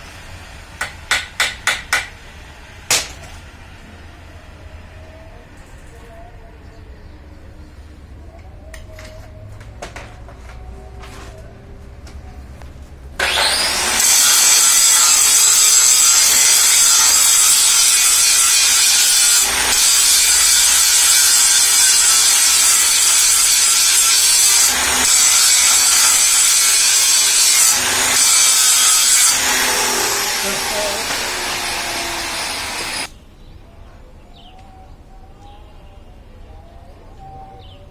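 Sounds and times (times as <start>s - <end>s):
angle grinder cutting metal: 13.2s - 33.1s.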